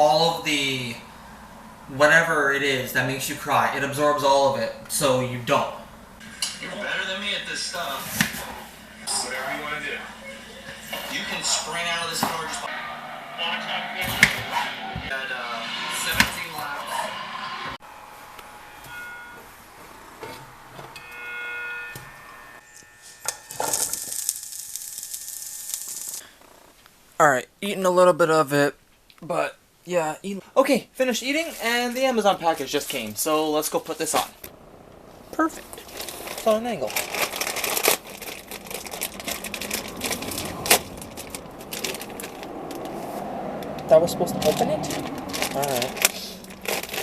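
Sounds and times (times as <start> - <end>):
food sizzling in a frying pan: 23.5 - 26.2.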